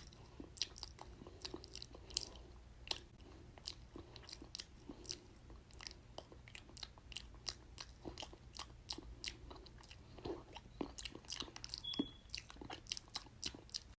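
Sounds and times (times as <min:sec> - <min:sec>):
mouth clicks and smacks: 0:10.5 - 0:14.0
brief high squeak: 0:11.8 - 0:12.3.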